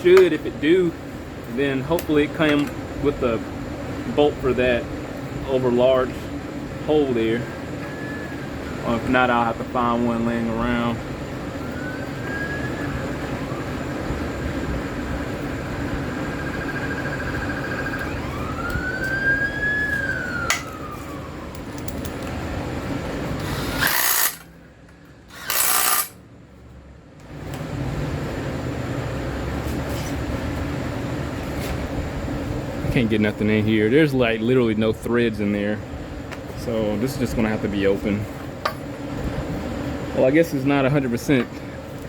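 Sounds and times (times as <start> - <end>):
steady background hum: 0.0 - 42.0
faint siren wailing: 6.9 - 23.2.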